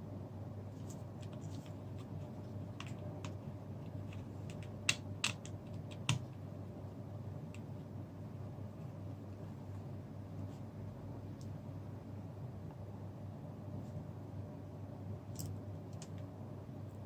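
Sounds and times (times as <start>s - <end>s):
steady low hum: 0.0s - 17.0s
light clicks of small parts: 15.3s - 16.3s.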